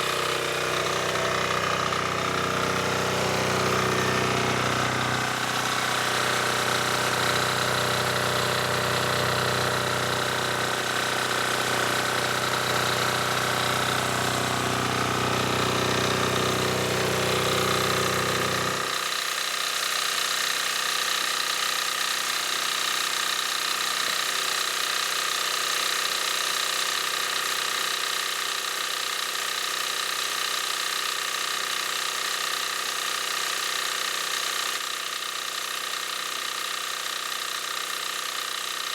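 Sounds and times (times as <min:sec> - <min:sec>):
diesel generator humming: 0:00.0 - 0:19.0.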